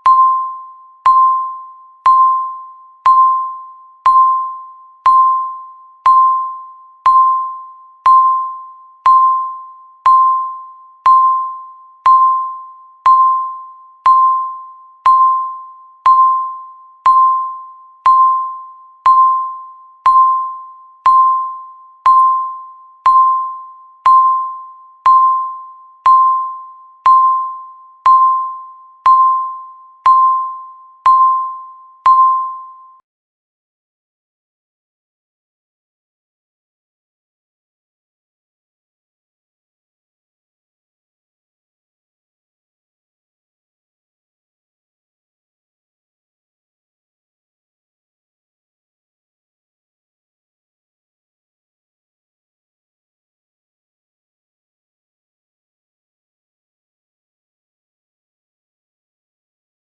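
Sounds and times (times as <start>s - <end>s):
timer electronic beeps: 0.0s - 33.0s.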